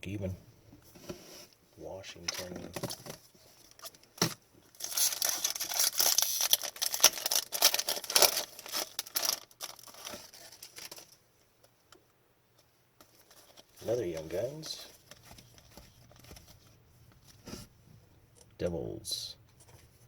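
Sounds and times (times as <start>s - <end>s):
foil wrapper tearing and crinkling: 4.7s - 11.1s.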